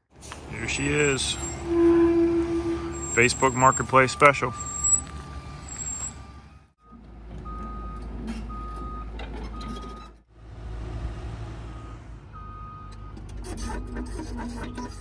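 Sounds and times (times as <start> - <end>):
diesel engine running: 0.0 - 15.0
backup alarm beeping: 0.7 - 10.0.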